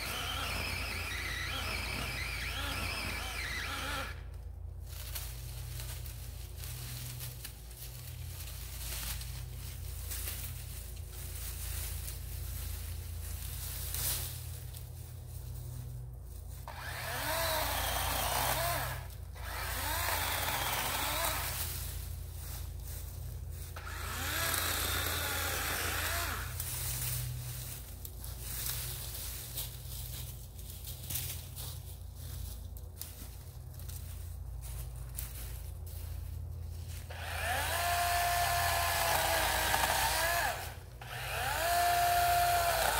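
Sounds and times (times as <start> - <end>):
battery chainsaw cutting brush: 0.0 - 4.3, 16.6 - 22.1, 23.6 - 27.3, 37.0 - 42.9.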